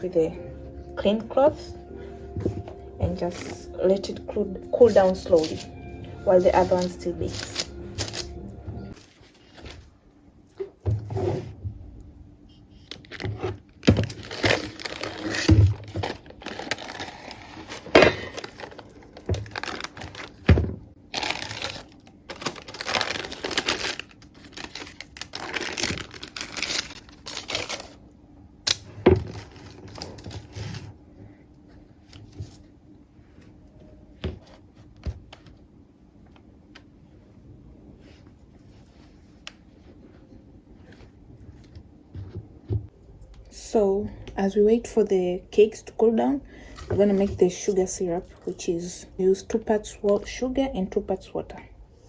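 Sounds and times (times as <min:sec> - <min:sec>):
crinkling and rustling: 0:12.8 - 0:28.0, 0:28.9 - 0:31.0.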